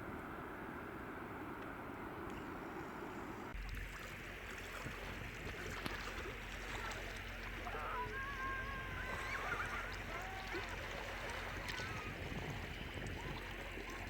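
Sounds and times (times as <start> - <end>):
wind and water rushing: 0.0 - 14.0
high tonal call: 6.7 - 12.8.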